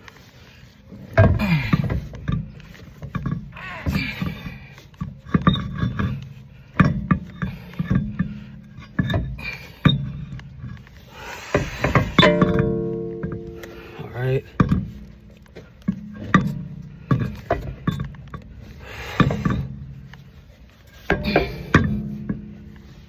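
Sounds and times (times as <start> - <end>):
metal clunks and knocks: 0.9 - 23.0
metal scraping: 4.8 - 23.0.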